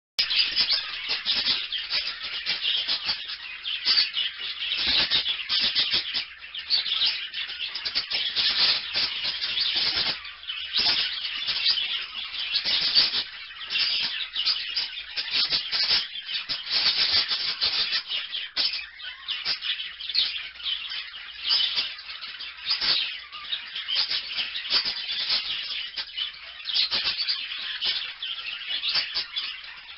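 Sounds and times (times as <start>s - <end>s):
parakeets chattering: 0.2s - 29.9s.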